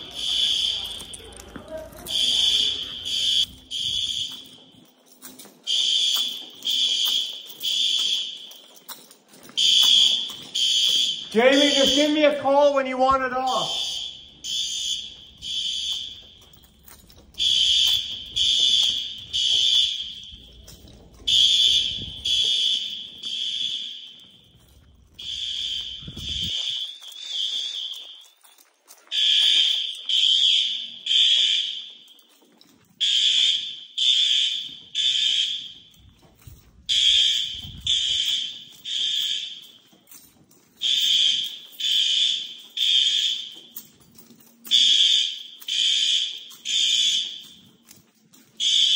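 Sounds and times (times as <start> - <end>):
fire alarm horn blasts: 0.0 - 4.8, 5.6 - 8.6, 9.5 - 32.3, 33.0 - 40.2, 40.8 - 44.0, 44.6 - 48.0, 48.6 - 48.9.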